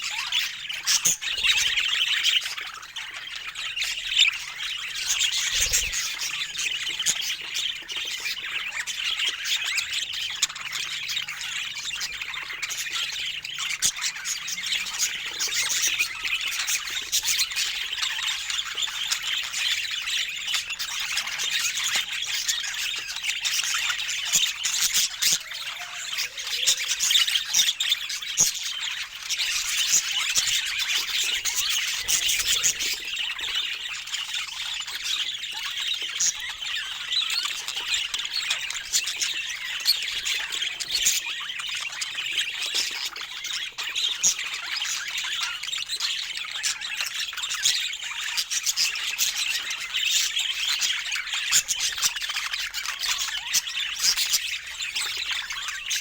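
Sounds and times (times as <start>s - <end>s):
budgerigars chattering and squawking: 0.0s - 56.0s.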